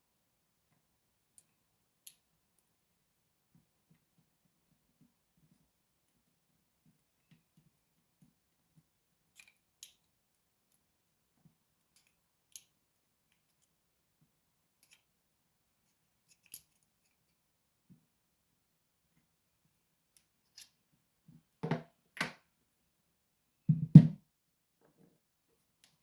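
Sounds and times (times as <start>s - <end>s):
small metallic clicks and taps: 6.9s - 10.1s, 11.4s - 13.8s, 14.8s - 15.1s.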